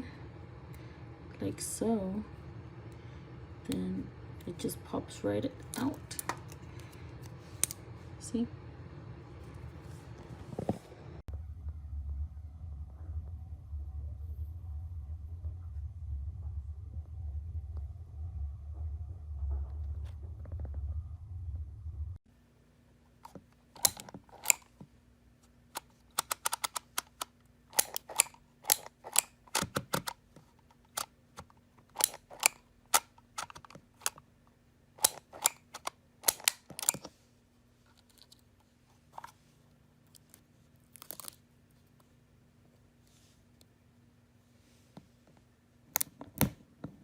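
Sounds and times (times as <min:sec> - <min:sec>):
label maker plastic clicks: 0:25.8 - 0:30.2, 0:35.0 - 0:37.1.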